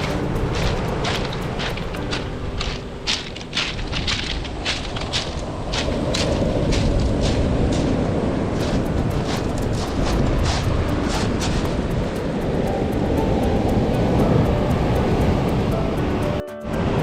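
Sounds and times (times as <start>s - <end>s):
stones rattling in surf: 0.0s - 12.0s
waves breaking on pebbles: 0.0s - 12.0s
wind buffeting microphone: 0.0s - 17.0s.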